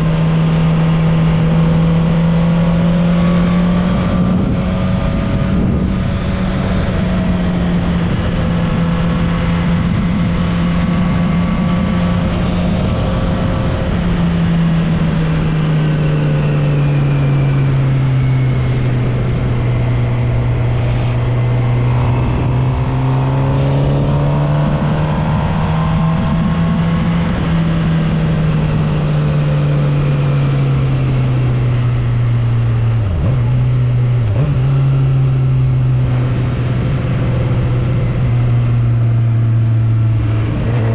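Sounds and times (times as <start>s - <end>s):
motorcycle engine at mid revs: 0.0s - 40.9s
wind rush: 0.0s - 40.9s.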